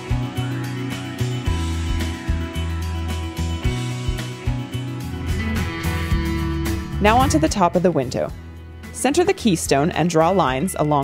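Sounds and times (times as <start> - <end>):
guitar music with bass and beat: 3.2 - 8.6.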